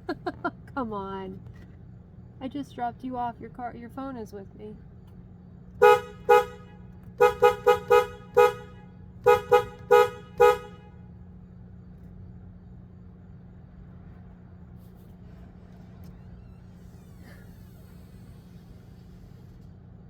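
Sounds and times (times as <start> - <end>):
steady low hum: 0.0 - 20.0
car horn beeps: 5.8 - 11.2.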